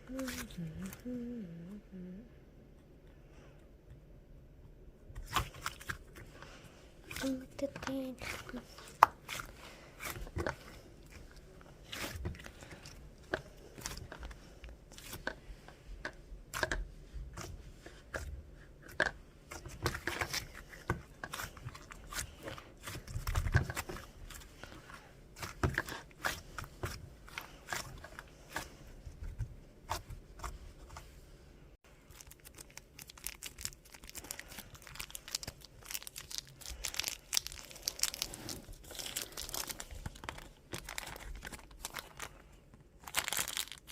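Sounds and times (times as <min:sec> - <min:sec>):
slime crackling and popping: 0:32.0 - 0:42.3, 0:43.0 - 0:43.9.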